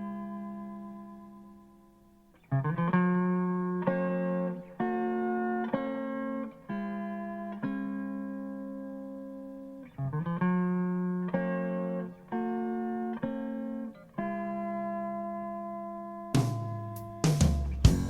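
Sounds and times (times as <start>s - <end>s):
instrumental jazz-funk with guitar: 9.9s - 18.0s.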